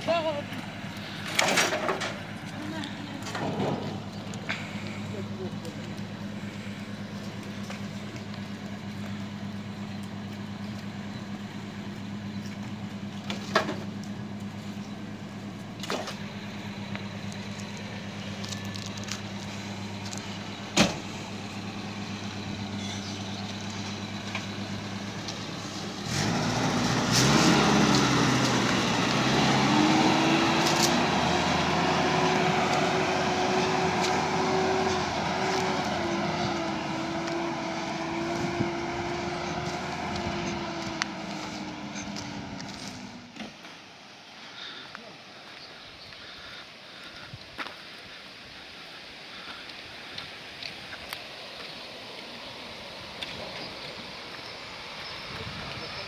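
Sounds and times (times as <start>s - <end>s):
engine running low: 0.0s - 47.4s, 48.4s - 56.0s
engine revving up: 15.8s - 43.5s.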